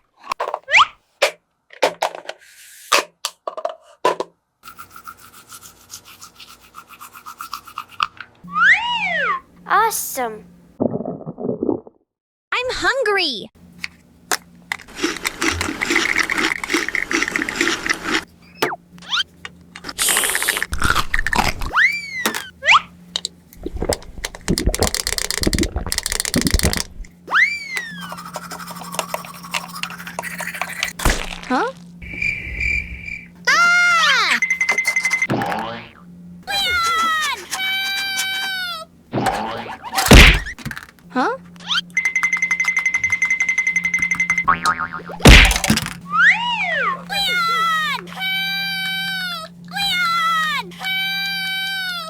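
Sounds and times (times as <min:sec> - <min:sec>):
rising and falling whistle effect: 0:08.5 - 0:09.4, 0:32.0 - 0:33.7
clicking and rattling objects: 0:13.8 - 0:17.9, 0:22.3 - 0:27.1, 0:34.4 - 0:35.3, 0:36.5 - 0:44.5, 0:45.2 - 0:46.1
clicks of small hard objects: 0:23.2 - 0:27.0, 0:36.5 - 0:38.6, 0:39.3 - 0:41.1, 0:45.3 - 0:46.0
fast rubbing or scraping: 0:27.8 - 0:31.0, 0:36.5 - 0:41.0.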